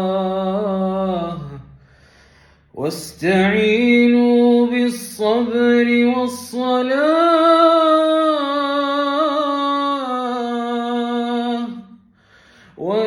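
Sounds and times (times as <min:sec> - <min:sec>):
man reciting melodically: 0:02.7 - 0:12.0.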